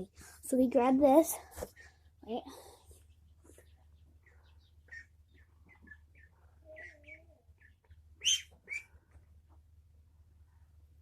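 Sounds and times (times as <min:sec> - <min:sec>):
small birds chirping: 0:00.8 - 0:09.2.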